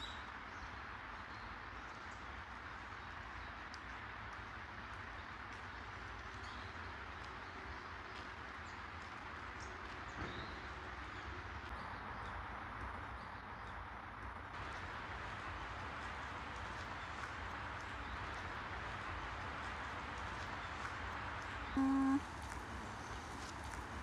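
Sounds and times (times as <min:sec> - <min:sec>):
footsteps on a path: 0:14.6 - 0:24.0.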